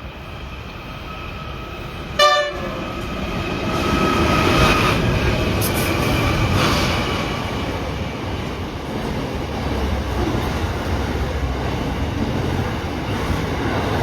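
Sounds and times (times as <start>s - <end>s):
passing train rumble: 0.0s - 14.0s
locomotive horn toot: 2.2s - 2.8s.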